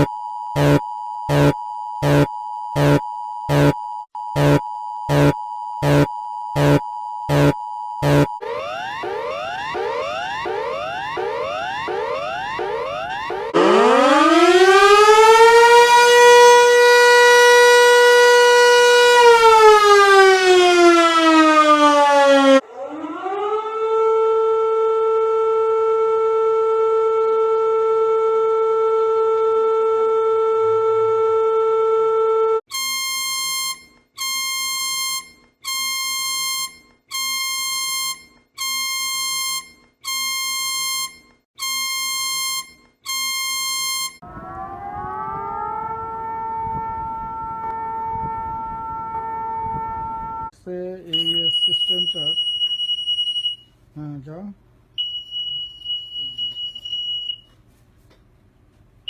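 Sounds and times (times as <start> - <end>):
high beeps: 0.0 - 13.5, 51.2 - 53.6, 55.0 - 57.5
steady alarm tone: 0.0 - 24.2, 32.7 - 50.5, 51.2 - 53.6
siren winding up and down: 0.0 - 50.5.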